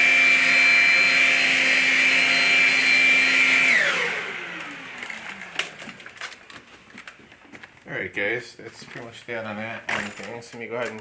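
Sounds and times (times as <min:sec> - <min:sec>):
stick vacuum motor whine: 0:00.0 - 0:07.1.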